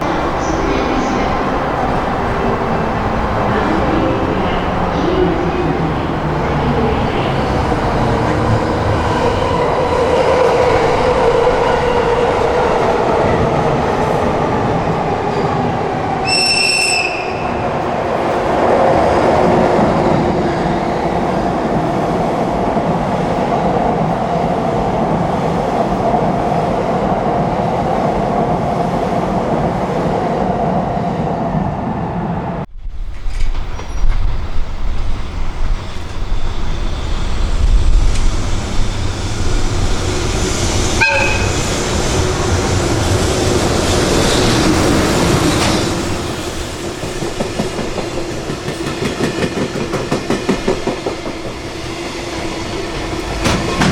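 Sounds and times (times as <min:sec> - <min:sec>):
train rumble and wheel noise: 0:00.0 - 0:53.9
high air whistle blast: 0:16.2 - 0:17.4.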